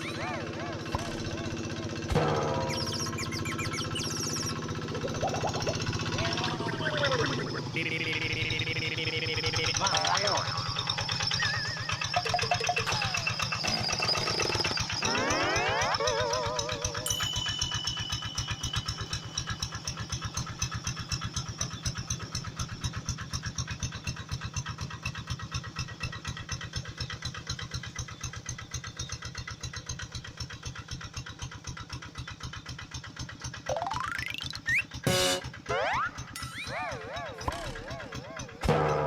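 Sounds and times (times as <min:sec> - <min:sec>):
tractor engine idling: 0:00.0 - 0:39.0.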